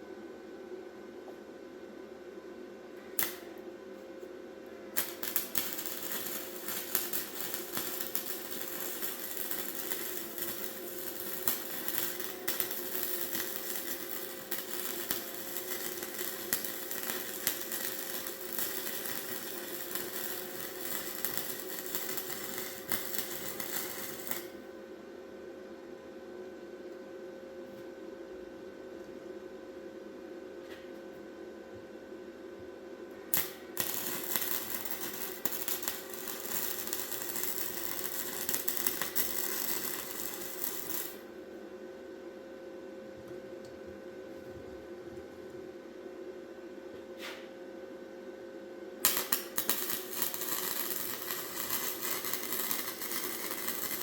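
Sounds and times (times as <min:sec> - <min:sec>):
electric arc welder crackling: 0:03.2 - 0:03.6, 0:04.9 - 0:24.6, 0:33.3 - 0:41.3, 0:49.0 - 0:54.0.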